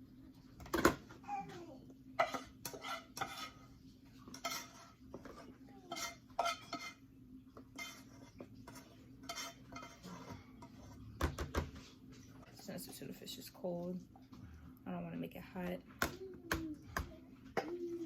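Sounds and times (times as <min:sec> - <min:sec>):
utensil scraping a bowl: 0:02.2 - 0:13.1.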